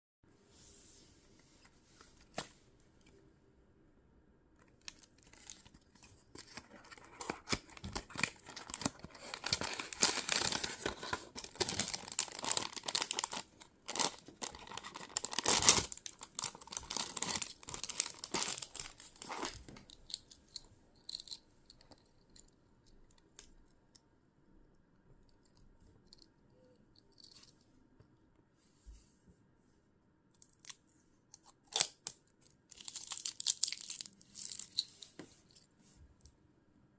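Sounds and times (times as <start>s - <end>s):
packaging tearing and crinkling: 4.8s - 19.8s, 32.7s - 34.8s.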